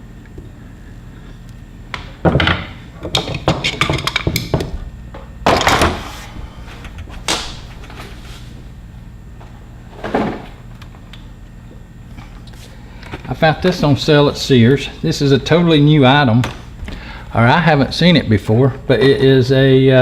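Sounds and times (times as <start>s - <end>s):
tools knocking and clattering: 2.2s - 4.8s.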